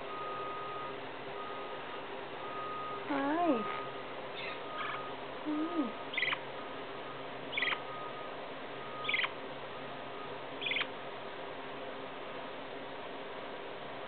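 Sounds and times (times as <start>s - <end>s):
parakeet chirping: 4.3s - 5.1s, 5.8s - 6.4s, 7.5s - 7.9s, 9.0s - 9.4s, 10.6s - 10.9s.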